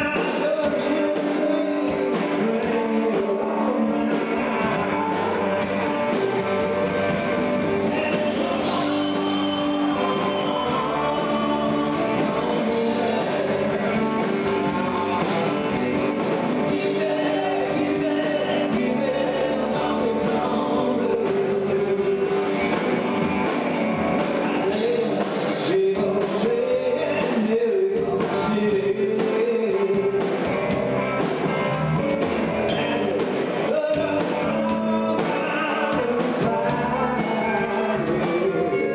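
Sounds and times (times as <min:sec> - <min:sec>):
lead singer singing: 0:00.0 - 0:31.7, 0:32.6 - 0:38.9
rock and roll band playing: 0:00.0 - 0:38.9.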